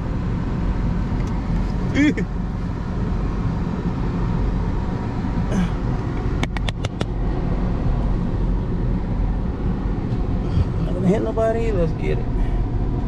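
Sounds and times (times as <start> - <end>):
car engine and road noise: 0.0 - 13.0
sharp clicks: 6.4 - 7.2.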